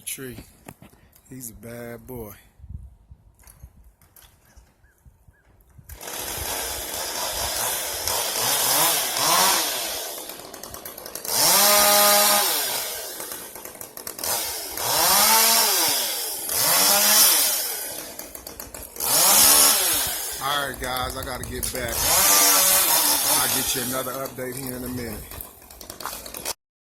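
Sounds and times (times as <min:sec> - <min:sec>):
chainsaw revving: 0:05.9 - 0:26.6.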